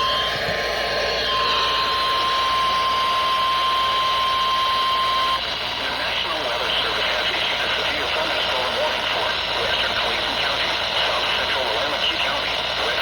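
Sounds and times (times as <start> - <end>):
high whistle: 0.0 - 5.4
radio static hiss: 5.6 - 13.0.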